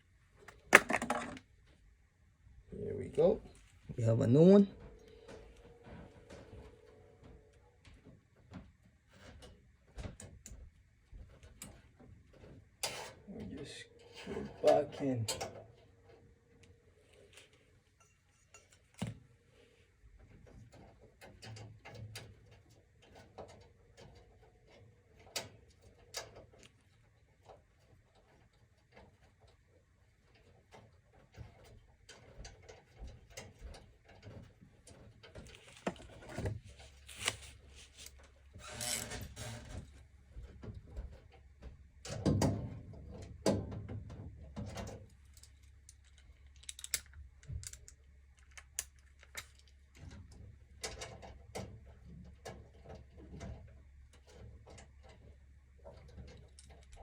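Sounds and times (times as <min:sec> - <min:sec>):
rustling: 0:34.4 - 0:39.6.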